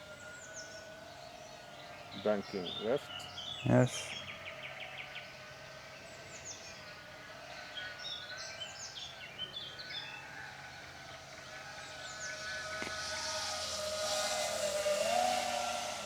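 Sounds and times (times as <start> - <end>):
small birds chirping: 0.0 - 16.0
drone motors whining: 9.5 - 16.0.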